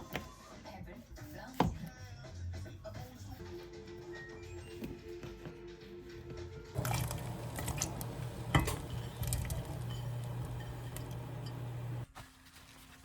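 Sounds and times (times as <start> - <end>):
low mechanical hum: 6.8 - 12.1
dishes and utensils clinking: 8.4 - 11.6.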